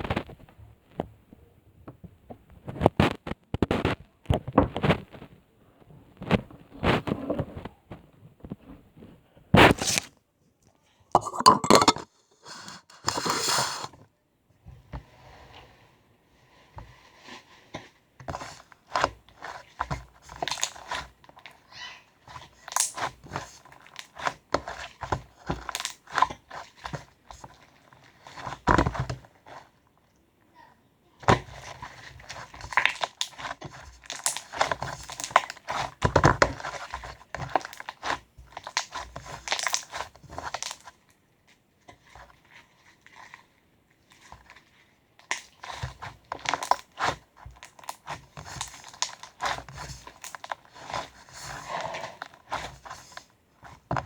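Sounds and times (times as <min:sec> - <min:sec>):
crinkling and rustling: 0:00.0 - 0:10.3, 0:11.2 - 0:30.1, 0:31.2 - 0:54.0
clicks and knocks: 0:11.2 - 0:12.1.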